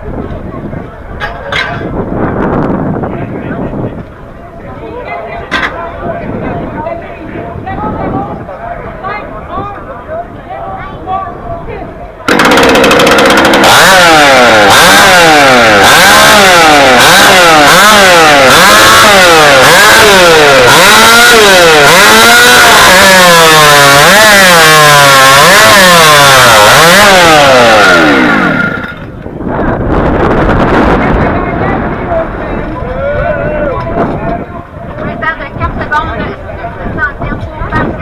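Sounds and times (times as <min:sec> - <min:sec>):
chainsaw cutting log: 0:12.3 - 0:29.2.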